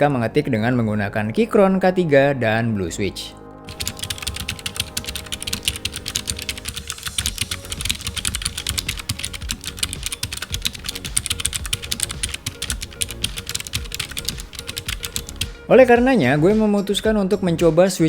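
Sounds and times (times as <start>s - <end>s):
fast typing on clicky keyboard: 3.7s - 15.6s.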